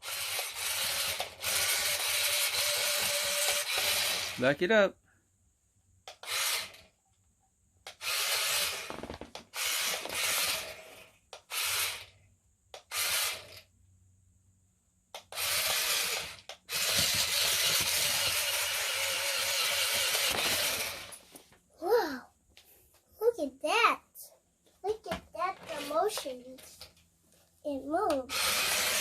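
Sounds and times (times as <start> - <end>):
toy motor and gears whirring: 0.0 - 4.6, 6.1 - 7.0, 7.8 - 13.7, 15.1 - 21.3, 25.4 - 27.0, 28.0 - 29.0.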